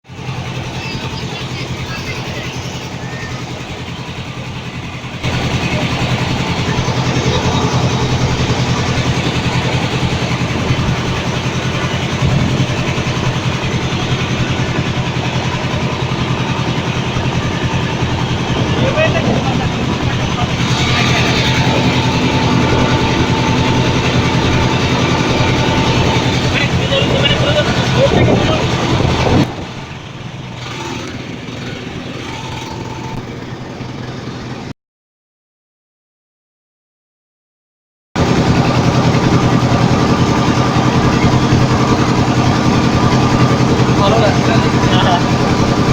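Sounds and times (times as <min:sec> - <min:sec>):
boat engine humming: 0:00.1 - 0:34.7, 0:38.2 - 0:45.9
rushing noise: 0:00.5 - 0:34.6.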